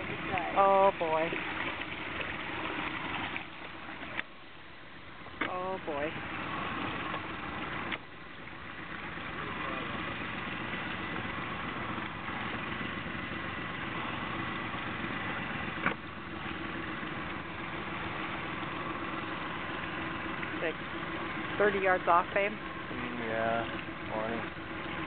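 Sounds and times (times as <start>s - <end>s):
boat engine idling: 0.0s - 25.0s.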